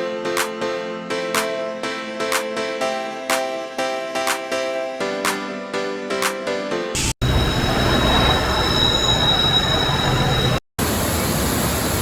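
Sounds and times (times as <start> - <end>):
train wheels squealing on rail: 7.0 - 10.6.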